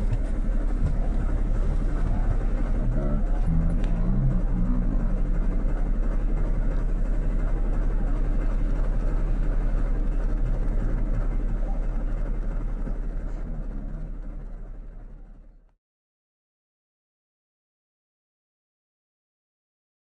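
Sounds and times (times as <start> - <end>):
vehicle rumbling: 0.0 - 15.6.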